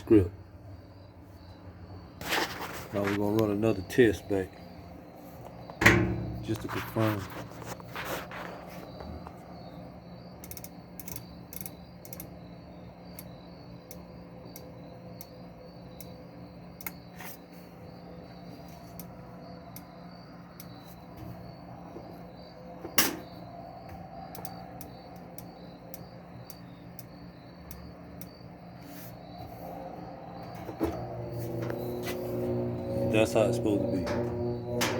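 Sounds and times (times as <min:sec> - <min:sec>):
washing machine motor hum: 0:03.2 - 0:07.2, 0:10.9 - 0:34.9.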